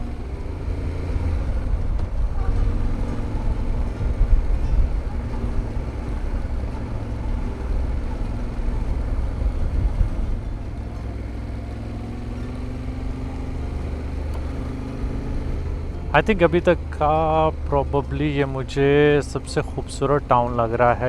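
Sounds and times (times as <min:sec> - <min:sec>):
wind rumble on microphone: 0:00.0 - 0:10.8
motorcycle engine running: 0:00.0 - 0:21.0.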